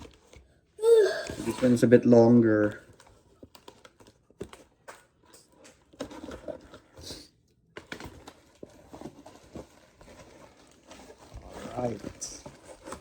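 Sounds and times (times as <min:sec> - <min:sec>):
packaging rustling and clicking: 0:02.8 - 0:07.0, 0:07.8 - 0:13.0.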